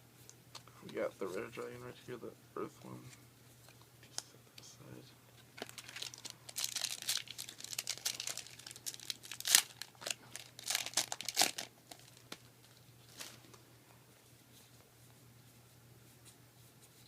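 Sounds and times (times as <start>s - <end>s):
foil pack crinkling: 5.6s - 13.5s
foil tearing: 5.7s - 12.2s.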